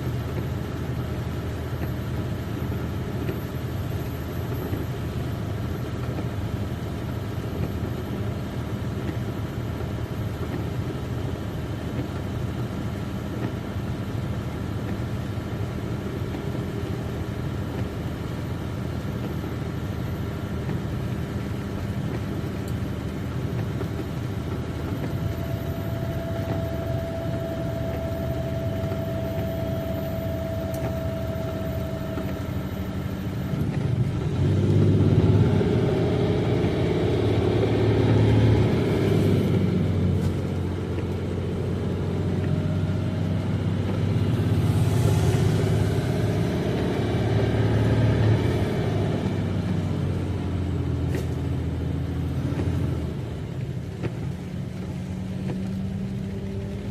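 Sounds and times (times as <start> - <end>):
road noise: 0.0 - 56.9
truck diesel engine drone: 0.0 - 56.9
faint high whine: 25.2 - 33.4.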